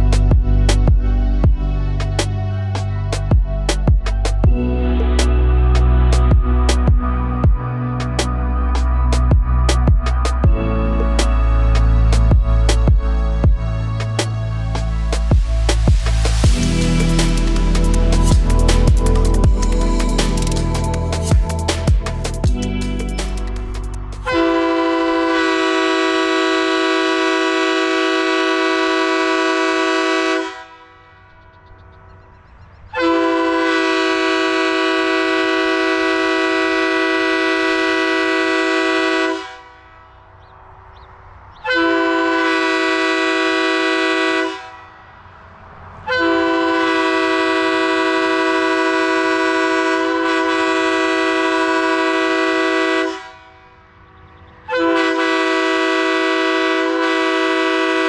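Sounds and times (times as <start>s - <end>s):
train air horn blasts: 24.3s - 31.1s, 32.9s - 39.9s, 41.6s - 45.0s, 46.1s - 53.8s, 54.7s - 58.0s.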